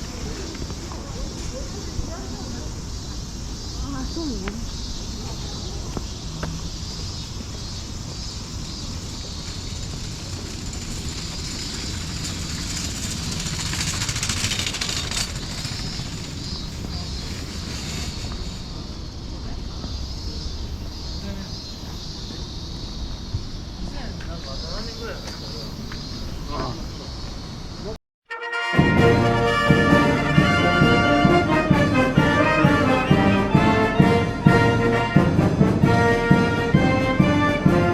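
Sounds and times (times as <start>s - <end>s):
cicadas buzzing: 0.0s - 28.0s, 28.6s - 37.9s
orchestral music led by brass: 28.3s - 37.9s.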